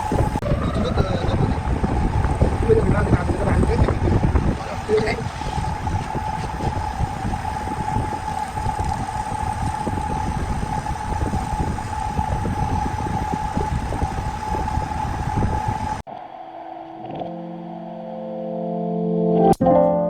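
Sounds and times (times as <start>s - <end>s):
wood lathe whining: 0.0s - 16.0s
music with held notes: 17.0s - 20.0s.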